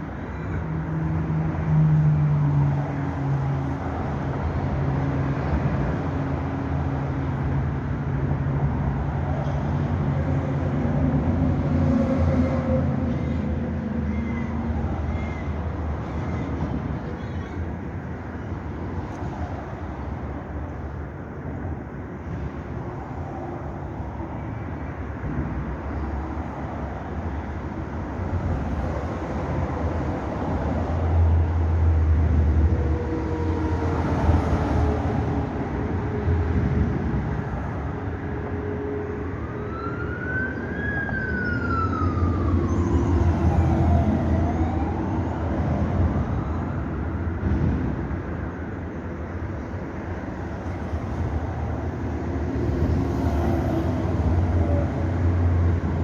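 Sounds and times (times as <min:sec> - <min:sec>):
traffic rumble: 0:00.0 - 0:56.0
siren wailing: 0:38.8 - 0:46.9.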